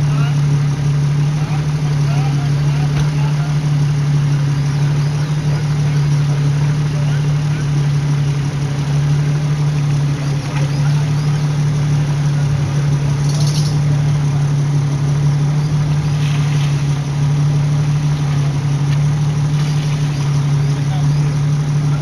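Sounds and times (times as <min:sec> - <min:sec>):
vehicle engine running low: 0:00.0 - 0:22.0.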